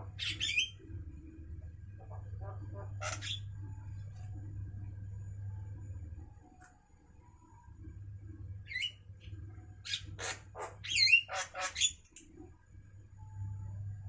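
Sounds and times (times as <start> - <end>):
low steady hum: 0.0 - 14.0
myna bird calling: 2.0 - 3.6, 9.8 - 12.0.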